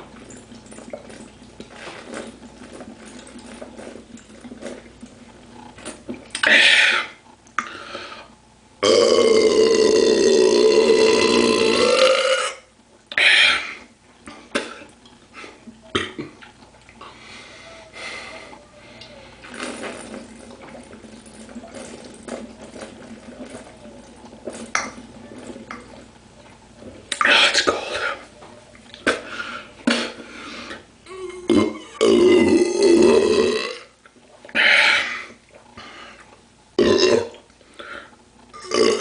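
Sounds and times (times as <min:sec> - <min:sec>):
person belching: 0:08.8 - 0:13.4, 0:31.1 - 0:34.0, 0:36.8 - 0:37.4, 0:38.6 - 0:39.0.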